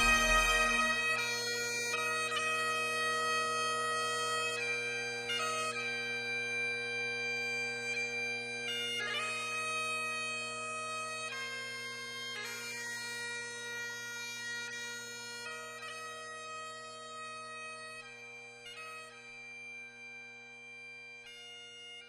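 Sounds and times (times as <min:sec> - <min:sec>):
slow melody: 0:00.0 - 0:01.4
steady drone: 0:00.0 - 0:01.4.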